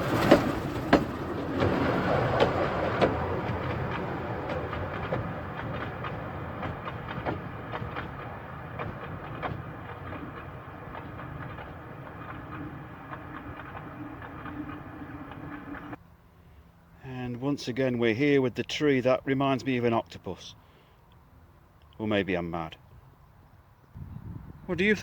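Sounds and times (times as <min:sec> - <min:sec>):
steam train rolling by: 0:00.0 - 0:16.0
wheels clicking over rail joints: 0:00.0 - 0:16.0.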